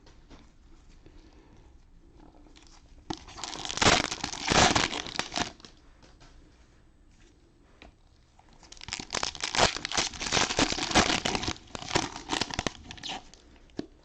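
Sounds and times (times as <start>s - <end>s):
cellophane wrappers crinkling: 2.6s - 5.8s, 8.5s - 13.5s.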